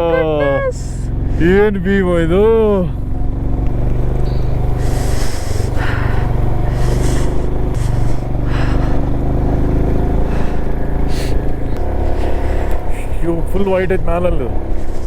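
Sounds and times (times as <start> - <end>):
motorcycle engine running: 0.0 - 15.0
short hissing puffs: 4.8 - 9.0.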